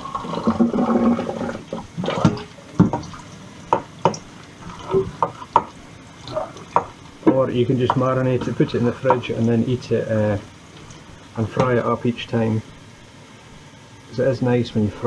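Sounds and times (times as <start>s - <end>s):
hands washing with soap: 0.0s - 9.5s
tap running: 0.0s - 9.5s.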